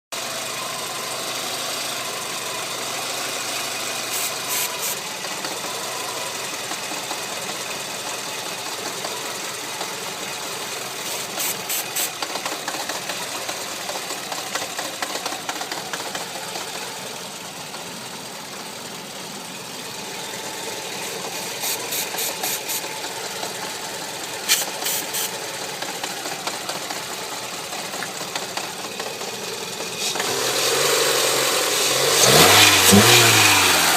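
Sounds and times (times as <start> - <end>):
car engine idling: 0.2 - 33.9
sharp high-pitched hissy pulses: 4.1 - 5.0, 11.0 - 12.2, 21.0 - 22.9, 24.5 - 25.4.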